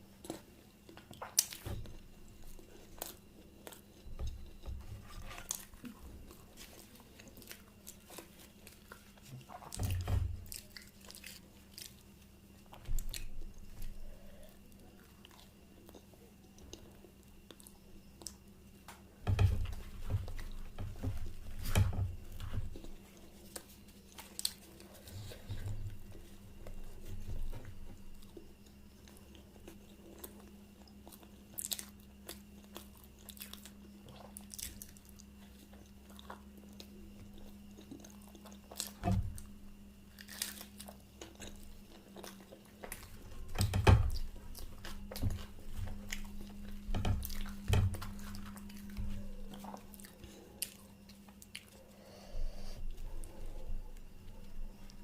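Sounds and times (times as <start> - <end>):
steady low hum: 0.0 - 55.0
person chewing with mouth clicks: 22.7 - 39.0, 44.1 - 52.0.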